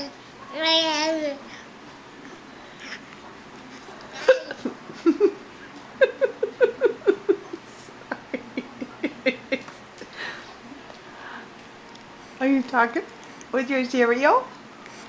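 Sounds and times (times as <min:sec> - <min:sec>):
woman laughing: 0:04.1 - 0:05.4, 0:06.0 - 0:10.1.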